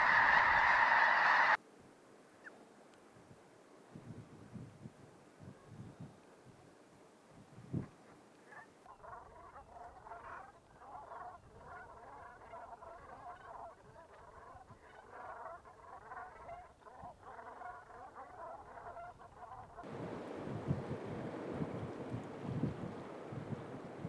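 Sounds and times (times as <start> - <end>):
waterfowl flock calling: 0.0 - 1.6, 8.6 - 20.4.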